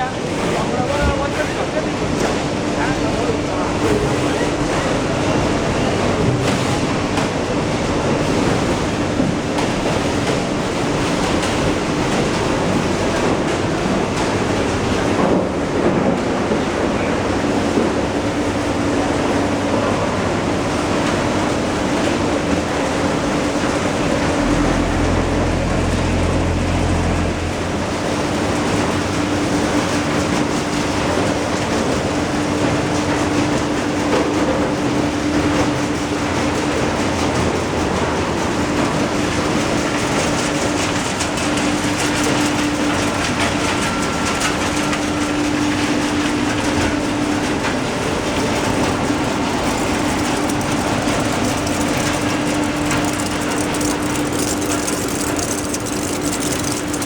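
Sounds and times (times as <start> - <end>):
vehicle running steadily: 22.5 - 31.2
deeper rumble: 24.0 - 29.2.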